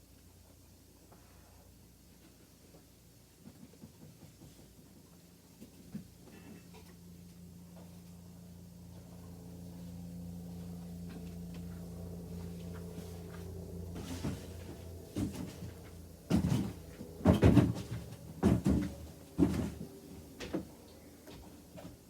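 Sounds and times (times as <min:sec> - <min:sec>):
steady low hum: 0:04.4 - 0:22.0.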